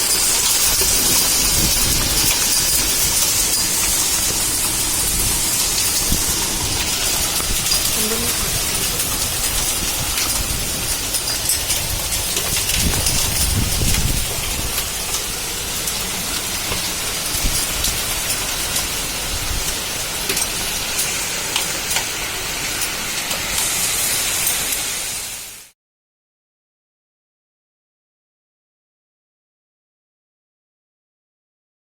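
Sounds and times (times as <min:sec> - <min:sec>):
hailstones clicking on surfaces: 0:00.0 - 0:24.9
hail and rain falling: 0:00.0 - 0:25.7.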